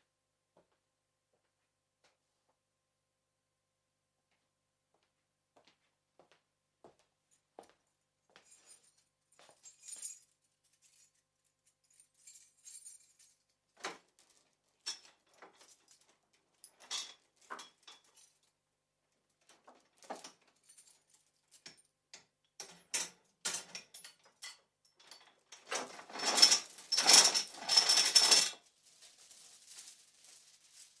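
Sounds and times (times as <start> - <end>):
chain links rattling: 8.5 - 11.2, 11.8 - 13.4, 23.9 - 28.6.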